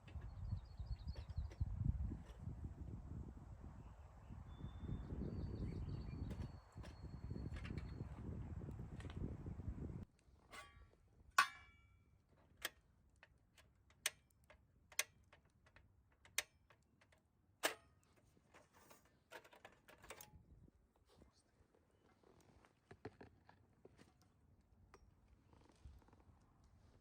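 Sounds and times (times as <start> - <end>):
brief metallic ring: 11.4 - 12.0
sharp clicks and light knocks: 12.4 - 20.3.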